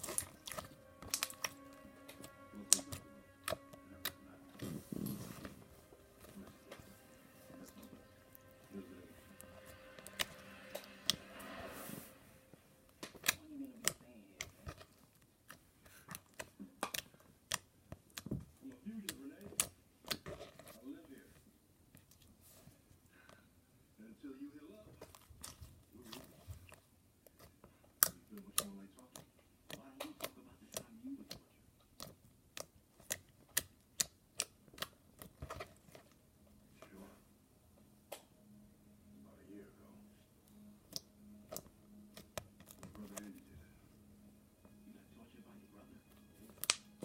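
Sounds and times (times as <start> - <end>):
slime squishing clicks and pops: 0.0 - 1.6, 46.6 - 47.0
slime squishing and popping: 0.0 - 4.7, 27.2 - 36.1, 46.6 - 47.0.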